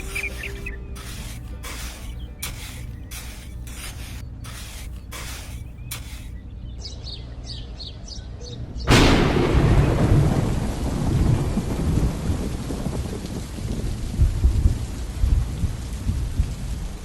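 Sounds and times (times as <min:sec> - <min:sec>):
heavy rain: 0:00.0 - 0:06.3, 0:08.8 - 0:17.0
short faint hisses: 0:00.0 - 0:06.4
thunder clap and rumble: 0:08.6 - 0:17.0.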